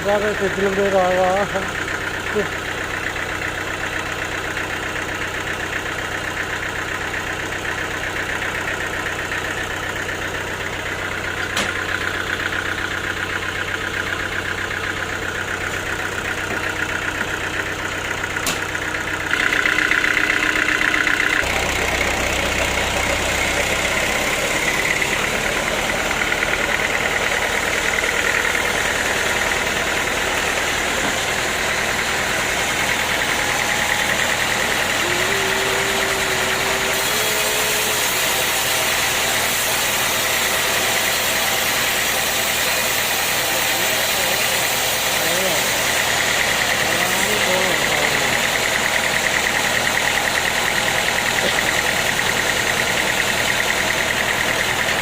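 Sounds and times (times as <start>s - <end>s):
sawmill machinery running: 0.0s - 55.0s.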